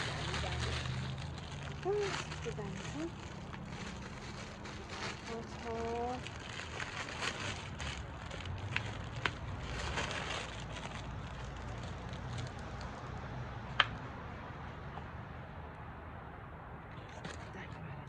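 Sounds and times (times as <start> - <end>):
potting soil rustling: 0.0 - 12.6.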